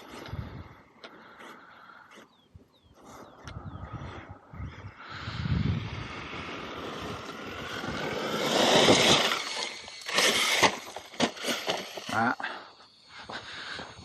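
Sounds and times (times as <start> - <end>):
electric motor whining: 5.3 - 12.2.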